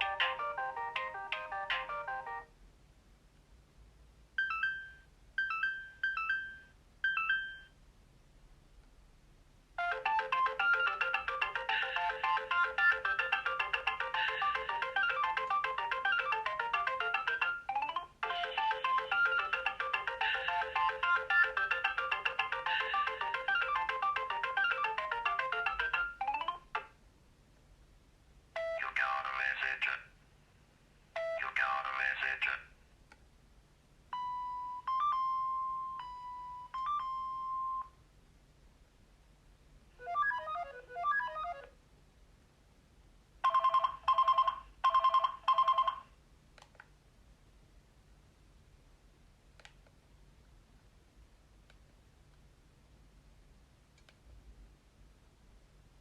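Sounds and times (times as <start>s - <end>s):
mobile phone ringtone melodies: 0.0s - 2.5s, 4.4s - 7.8s, 9.8s - 26.8s, 34.1s - 37.9s, 40.0s - 41.7s, 43.4s - 46.1s.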